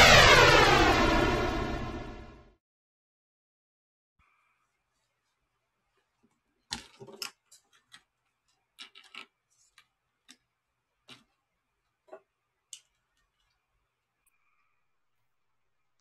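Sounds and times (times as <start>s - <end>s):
faint clicks and taps: 5.9s - 14.4s.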